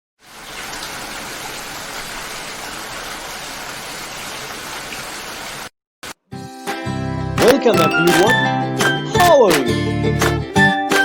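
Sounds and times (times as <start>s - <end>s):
heavy rain: 0.2s - 5.7s.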